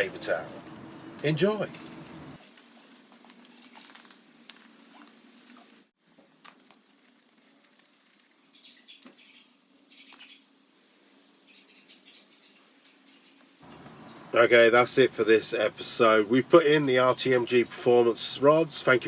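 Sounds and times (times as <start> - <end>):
wire brush scrubbing: 0.0 - 3.2.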